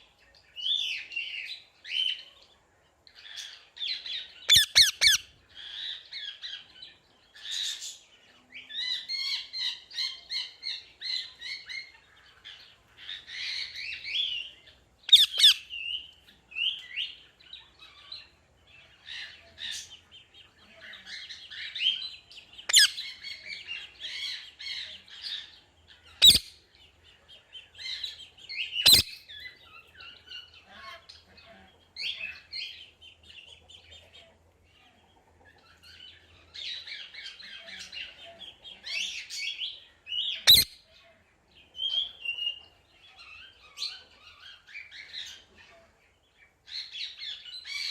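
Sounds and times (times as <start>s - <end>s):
parrots chirping and chattering: 0.4s - 47.9s
loud parrot squawks: 4.5s - 5.8s, 15.1s - 15.7s, 22.7s - 23.1s, 26.2s - 26.6s, 28.8s - 29.3s, 40.4s - 40.8s.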